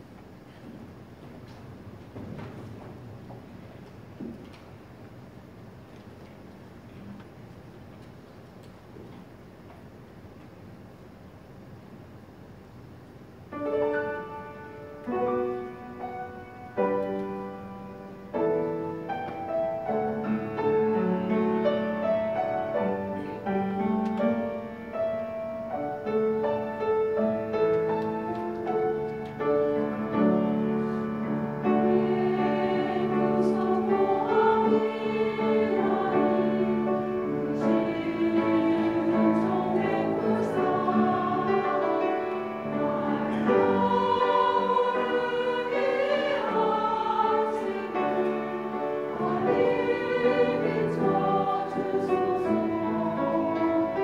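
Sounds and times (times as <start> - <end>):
mixed choir singing: 15.2 - 24.6, 30.0 - 54.0.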